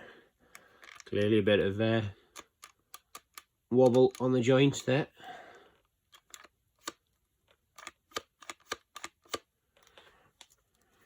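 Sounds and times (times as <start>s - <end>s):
plastic action figure clicking: 2.3s - 4.9s.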